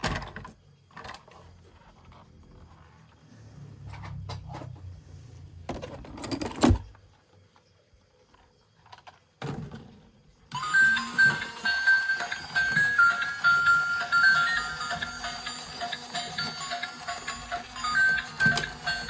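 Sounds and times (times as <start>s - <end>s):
bright tune of held notes: 10.5s - 19.0s.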